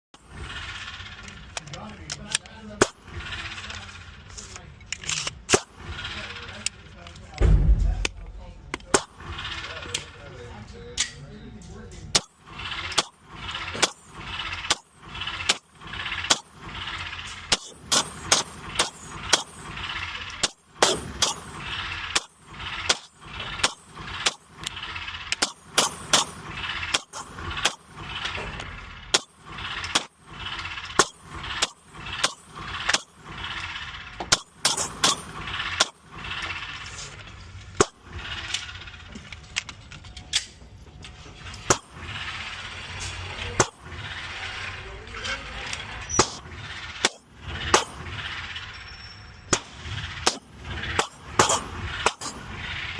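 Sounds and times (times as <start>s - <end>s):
gunshots: 5.5s - 6.0s, 7.4s - 9.7s, 12.1s - 16.8s, 17.4s - 19.8s, 20.4s - 24.7s, 25.3s - 30.3s, 30.9s - 33.3s, 34.3s - 36.1s, 43.6s - 44.0s, 46.1s - 48.2s, 49.5s - 52.4s.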